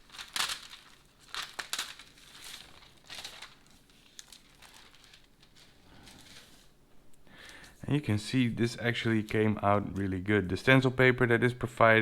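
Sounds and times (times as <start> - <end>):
paper rustling and crinkling: 0.0 - 6.8.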